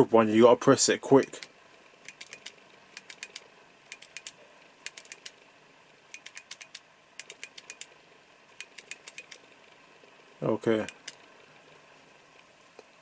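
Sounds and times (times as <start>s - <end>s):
torch push button clicking: 1.2s - 5.4s, 6.1s - 7.9s, 8.6s - 9.4s, 10.8s - 11.2s.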